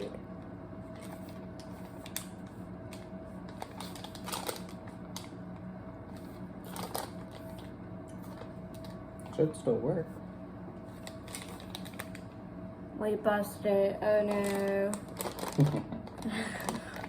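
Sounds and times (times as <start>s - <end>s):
steady low hum: 0.0s - 17.0s
packets crinkling and clicking: 0.9s - 5.4s, 6.1s - 9.0s, 11.0s - 12.3s, 14.2s - 17.0s.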